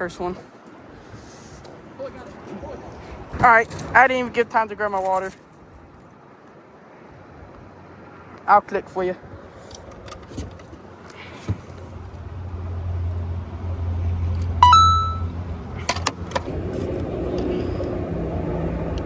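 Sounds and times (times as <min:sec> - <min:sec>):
boat motor humming: 0:11.6 - 0:19.0
sharp ringing ping: 0:14.6 - 0:15.3.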